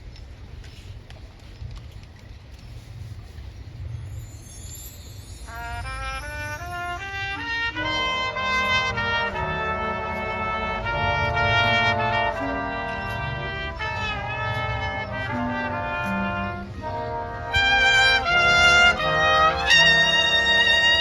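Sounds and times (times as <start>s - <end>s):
brass band playing chords: 5.5s - 21.0s.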